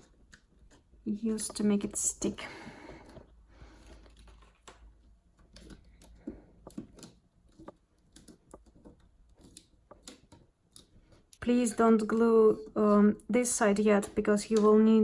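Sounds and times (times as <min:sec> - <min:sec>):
small clicks of plastic handling: 0:03.0 - 0:12.7.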